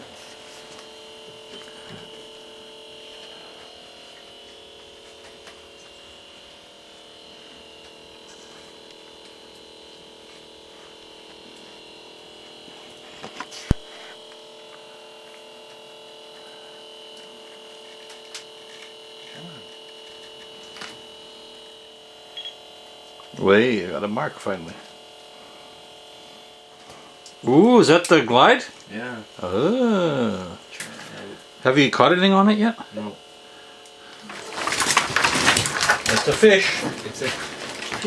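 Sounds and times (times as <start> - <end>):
electrical whine: 0.0 - 38.0.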